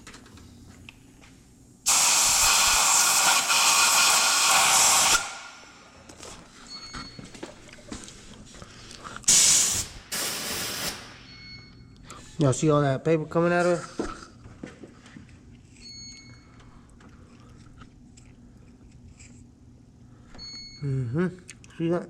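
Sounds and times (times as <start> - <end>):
compressed air hissing from nozzle: 1.9 - 5.6, 9.3 - 11.2.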